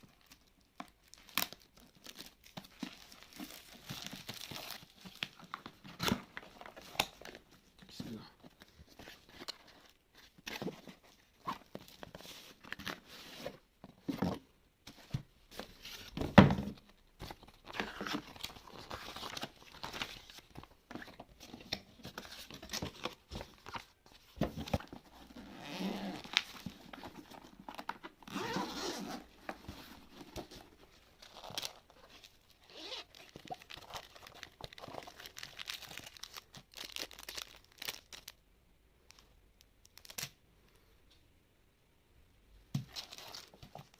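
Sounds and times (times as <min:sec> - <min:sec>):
packaging rustling and tearing: 0:00.1 - 0:07.4, 0:17.3 - 0:38.4, 0:42.9 - 0:43.9.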